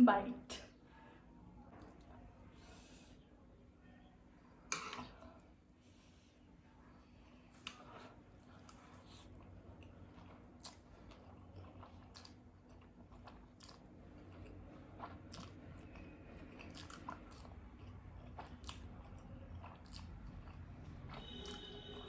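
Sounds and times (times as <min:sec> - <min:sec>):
low steady hum: 0:00.0 - 0:22.0
wet chewing mouth clicks: 0:08.6 - 0:22.0.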